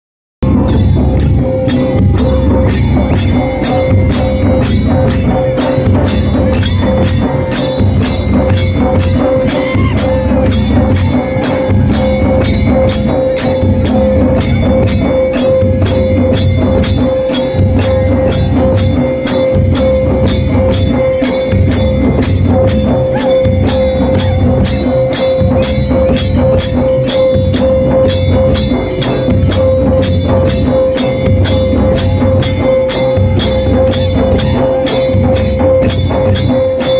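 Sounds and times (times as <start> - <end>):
drum beaten loudly: 0.4 - 36.9.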